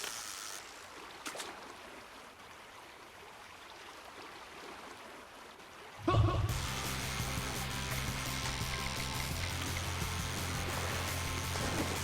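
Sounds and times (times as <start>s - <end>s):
flowing water: 0.0s - 12.0s
background music: 6.1s - 12.0s.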